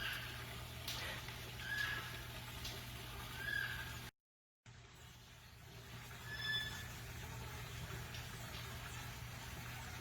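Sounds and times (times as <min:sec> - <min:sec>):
parrot call: 0:03.4 - 0:04.0, 0:06.2 - 0:06.9.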